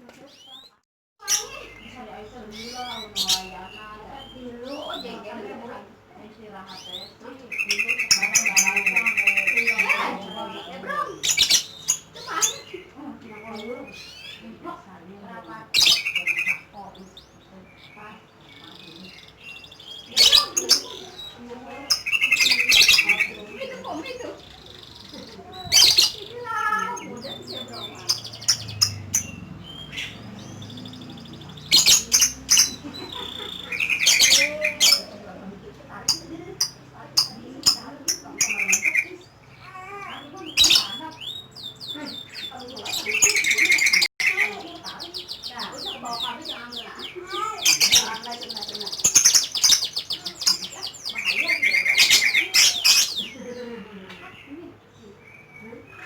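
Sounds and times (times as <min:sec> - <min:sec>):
bird chirps: 0:00.2 - 0:05.4, 0:06.5 - 0:14.6, 0:15.4 - 0:56.0
bird chattering trill: 0:00.4 - 0:05.4, 0:06.6 - 0:14.6, 0:15.5 - 0:53.6
bird squeak: 0:19.2 - 0:35.2.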